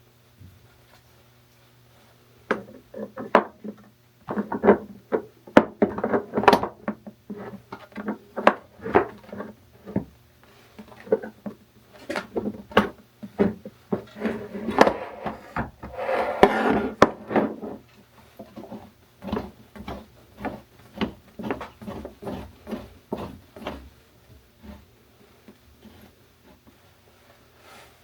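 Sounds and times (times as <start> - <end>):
scraping rub: 14.1 - 17.8, 18.6 - 23.9.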